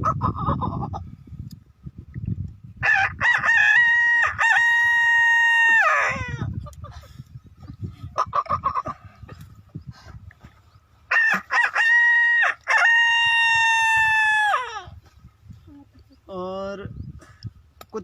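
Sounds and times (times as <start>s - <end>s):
man imitating rooster crow: 2.8s - 6.5s, 11.1s - 14.9s.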